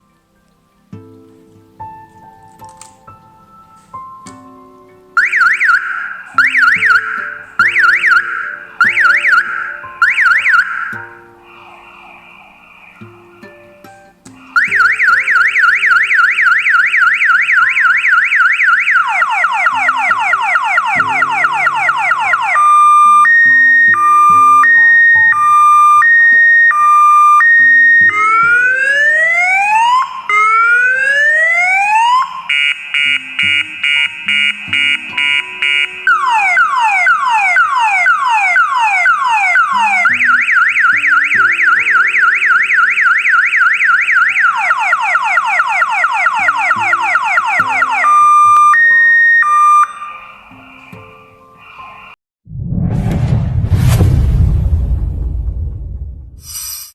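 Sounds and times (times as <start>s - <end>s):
car alarm siren: 5.2s - 13.7s, 14.4s - 52.2s.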